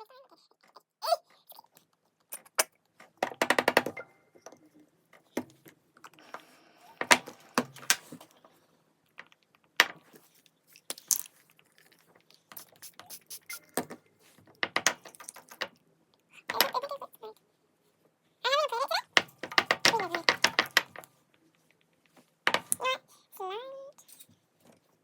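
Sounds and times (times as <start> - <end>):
small objects clicking and knocking: 9.1 - 14.0, 14.6 - 15.8, 19.2 - 22.8.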